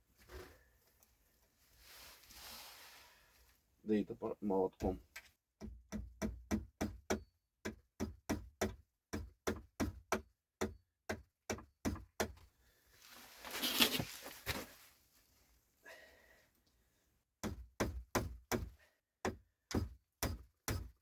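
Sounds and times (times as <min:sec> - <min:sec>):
rustling scraping noise: 0:01.6 - 0:03.3, 0:13.0 - 0:15.4.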